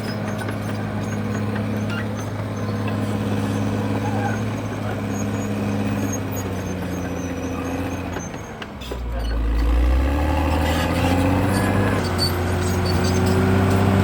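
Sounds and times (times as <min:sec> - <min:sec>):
bulldozer diesel engine: 0:00.0 - 0:14.0.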